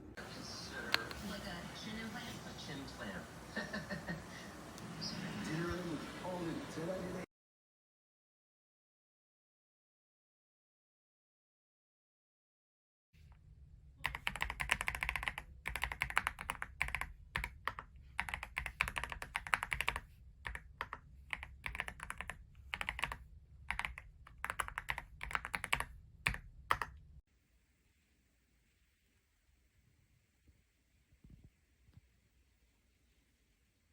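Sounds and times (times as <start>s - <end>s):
mechanical keyboard typing: 14.0s - 27.0s.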